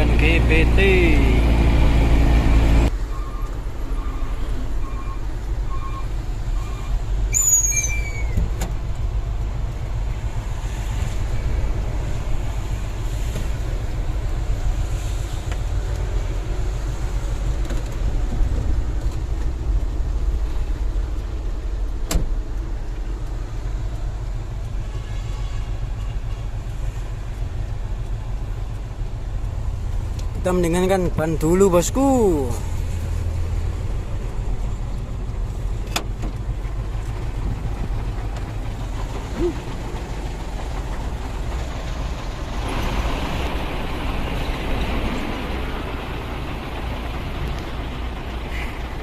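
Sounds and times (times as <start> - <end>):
truck diesel engine rumble: 0.0 - 49.0
high squeal: 3.1 - 8.4.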